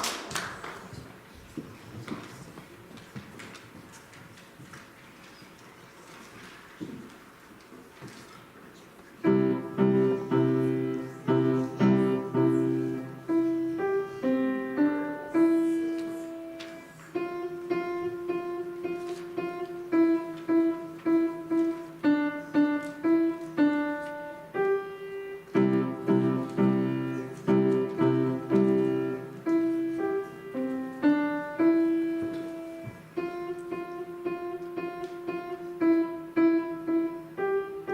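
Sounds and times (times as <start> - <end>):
piano playing chords and melody: 9.2 - 37.9.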